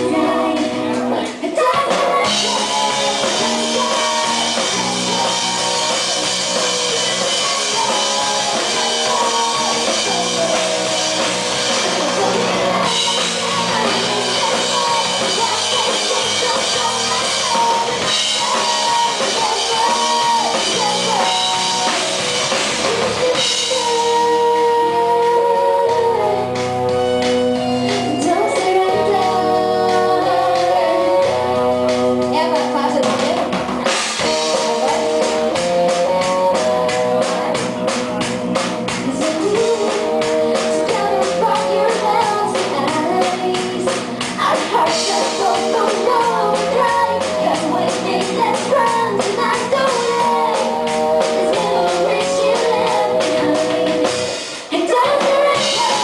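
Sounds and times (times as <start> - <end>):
woman singing: 0.0 - 38.3, 38.9 - 56.0
pop-rock band playing live: 0.0 - 56.0.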